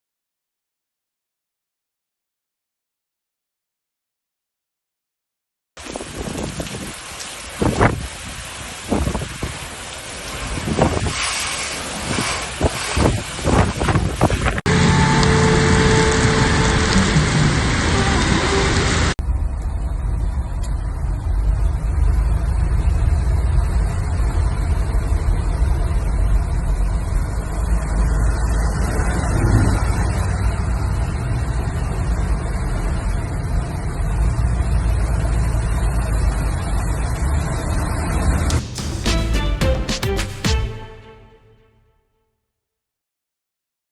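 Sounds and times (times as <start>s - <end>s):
rain hissing: 5.8s - 19.2s, 37.7s - 41.5s
low storm rumble: 5.8s - 38.7s.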